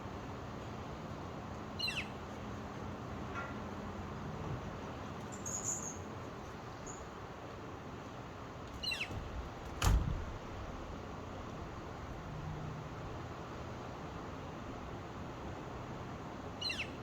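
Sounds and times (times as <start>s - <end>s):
falling bird calls: 8.7s - 9.9s.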